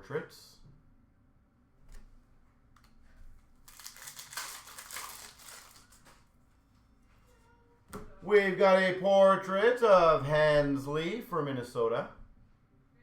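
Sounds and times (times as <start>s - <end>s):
plastic packaging crinkling: 3.4s - 6.4s.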